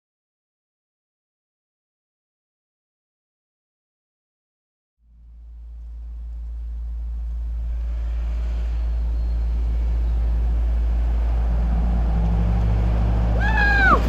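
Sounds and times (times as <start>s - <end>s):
vehicle engine rumble: 5.0s - 14.0s.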